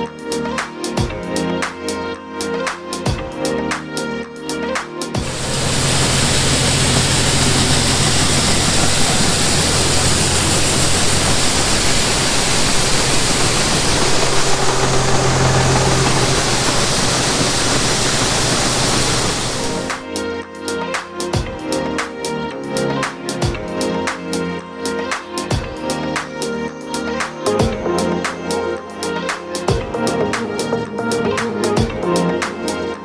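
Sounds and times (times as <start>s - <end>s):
music: 0.0s - 11.4s, 19.8s - 33.0s
grain auger humming: 5.2s - 20.0s.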